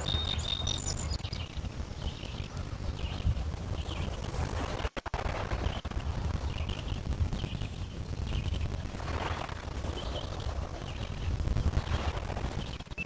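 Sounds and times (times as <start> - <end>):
small birds chirping: 0.0 - 4.3, 5.5 - 8.8, 9.8 - 13.0.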